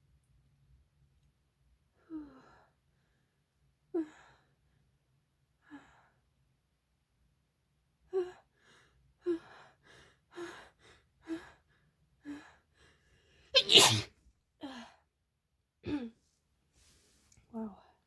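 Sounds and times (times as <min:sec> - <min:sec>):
woman sneezing: 0:13.6 - 0:14.1.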